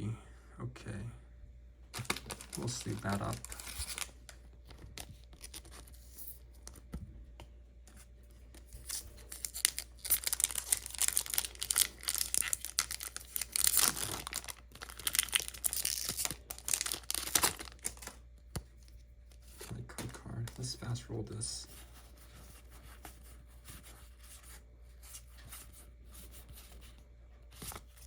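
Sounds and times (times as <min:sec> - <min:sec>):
foil wrapper crinkling and tearing: 0:02.0 - 0:06.8, 0:08.8 - 0:18.2.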